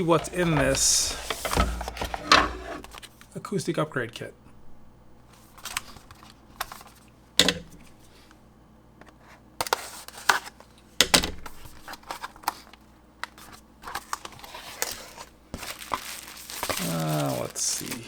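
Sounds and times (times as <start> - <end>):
packaging scraping and rustling: 0.0 - 3.1, 11.6 - 18.0.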